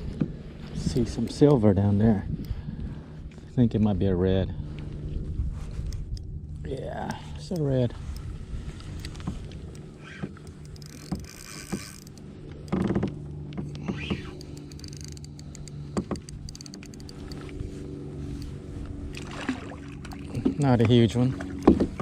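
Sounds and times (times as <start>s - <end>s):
fishing reel whirring: 7.1s - 13.0s, 13.7s - 18.9s
small water splashes: 19.1s - 22.0s.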